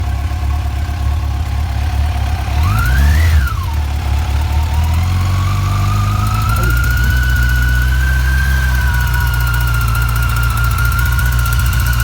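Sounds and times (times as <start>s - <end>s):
motorcycle engine idling and revving: 0.0s - 12.0s
mechanical engine noise: 2.4s - 12.0s.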